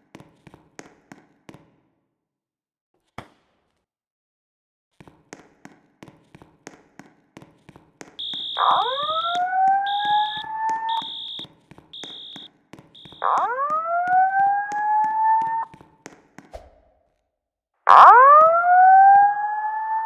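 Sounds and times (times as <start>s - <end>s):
high steady beeps: 8.2s - 13.6s
regular ticking: 8.2s - 13.6s
fire alarm whoop tone: 8.2s - 15.7s, 17.9s - 20.0s.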